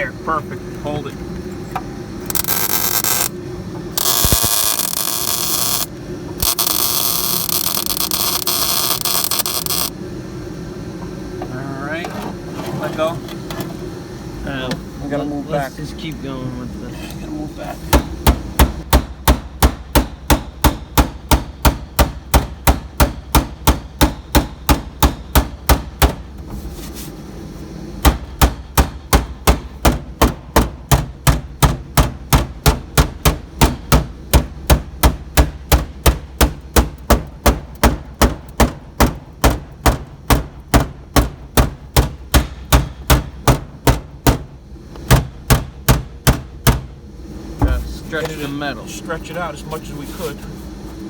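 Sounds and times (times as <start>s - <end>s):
hammering on sheet metal: 17.9s - 26.2s, 28.0s - 44.5s, 45.1s - 46.9s.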